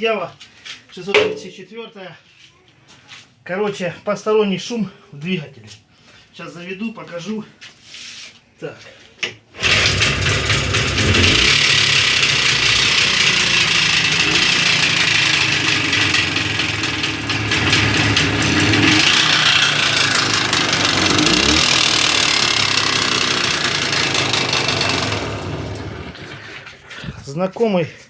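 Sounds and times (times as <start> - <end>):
motorcycle engine knocking and revving: 9.6 - 26.7.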